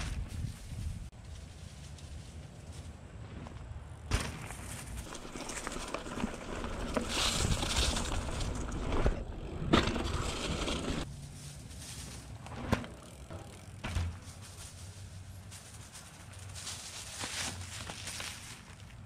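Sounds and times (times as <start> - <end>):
bike tyres rolling on dirt: 0.0 - 19.0
bike knocks: 12.5 - 14.5.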